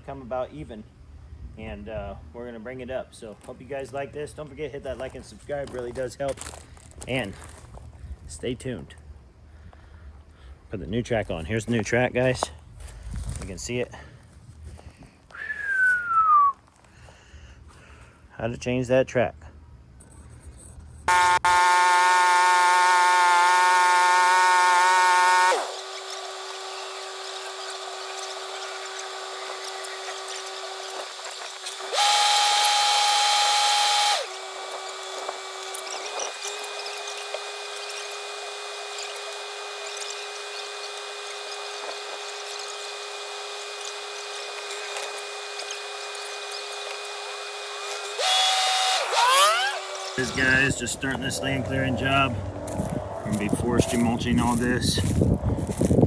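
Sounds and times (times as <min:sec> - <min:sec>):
steady mechanical whine: 0:20.1 - 0:56.0.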